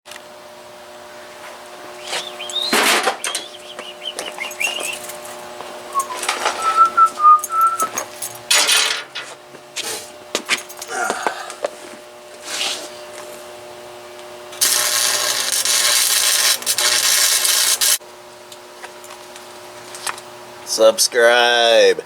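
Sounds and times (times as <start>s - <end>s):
steady low hum: 0.3s - 22.0s
high whistled notes: 2.0s - 5.2s, 5.9s - 8.0s.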